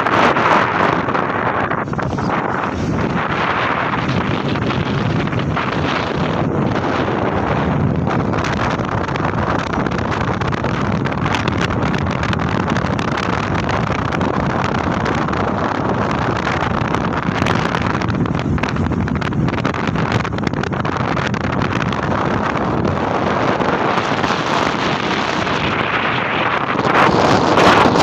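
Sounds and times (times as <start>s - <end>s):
sea waves: 0.0s - 12.4s
storm wind buffeting microphone: 0.0s - 28.0s.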